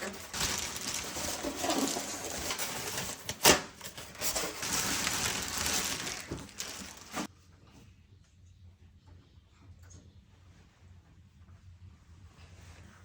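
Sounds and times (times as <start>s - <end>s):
crinkling handling noise: 0.0s - 7.3s.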